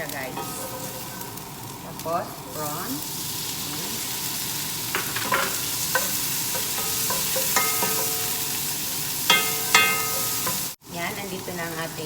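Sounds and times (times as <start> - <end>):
food sizzling in hot oil: 0.0 - 12.0
spatula striking wok: 4.9 - 10.8.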